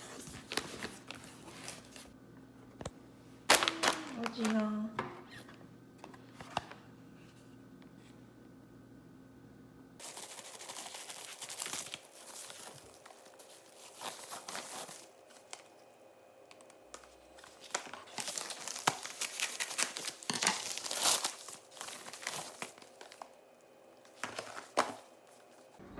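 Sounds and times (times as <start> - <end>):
crinkling and rustling: 10.0 - 15.8, 16.5 - 23.4, 24.0 - 25.8.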